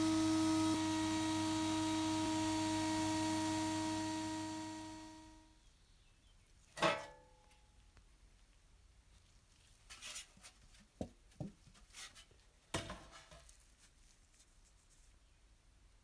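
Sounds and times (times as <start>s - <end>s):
small knocks: 10.0s - 13.6s.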